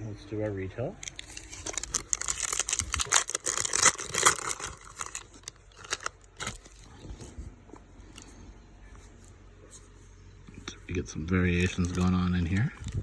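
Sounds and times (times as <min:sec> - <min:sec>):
wrapper tearing and crinkling: 0:01.0 - 0:07.3, 0:11.5 - 0:13.0.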